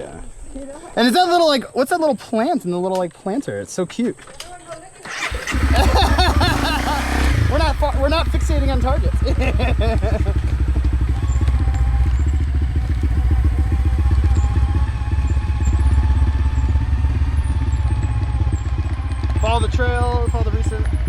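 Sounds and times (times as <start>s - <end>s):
motorcycle engine idling: 4.6s - 21.0s.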